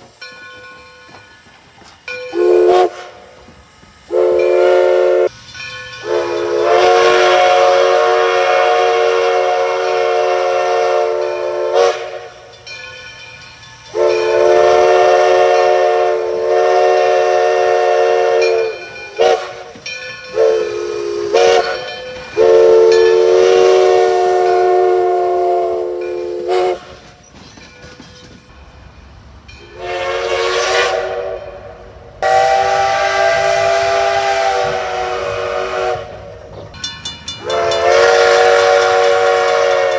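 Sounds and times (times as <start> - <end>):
steam whistle blasts: 2.1 - 3.5, 4.1 - 5.4, 6.0 - 12.5, 13.9 - 27.0, 29.7 - 36.5, 37.4 - 39.9.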